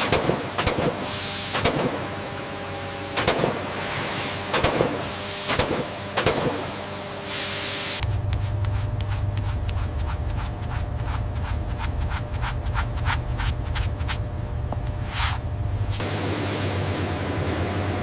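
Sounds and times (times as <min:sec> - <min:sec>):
low machine hum: 0:00.0 - 0:18.0
machine hiss: 0:03.0 - 0:08.0.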